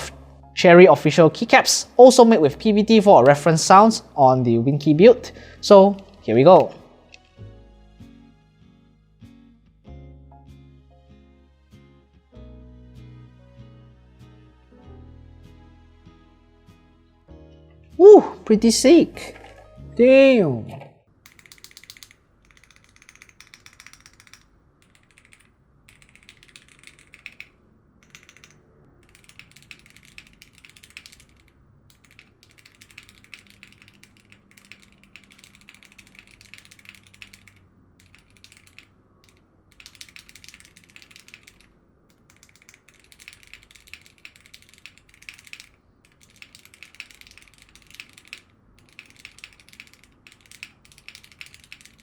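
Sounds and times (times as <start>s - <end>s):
mechanical keyboard keystrokes: 6.0s - 7.4s, 21.3s - 52.0s.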